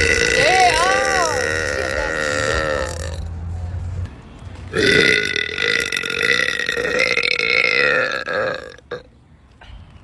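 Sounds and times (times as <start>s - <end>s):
woman burping: 0.0s - 3.2s.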